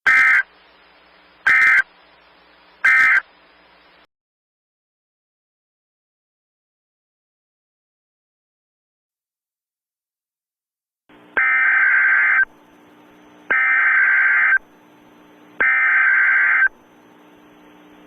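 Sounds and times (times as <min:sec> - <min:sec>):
faint hum: 0:00.0 - 0:04.1, 0:11.1 - 0:18.0
harsh digital data bursts: 0:13.5 - 0:14.6, 0:15.6 - 0:16.7.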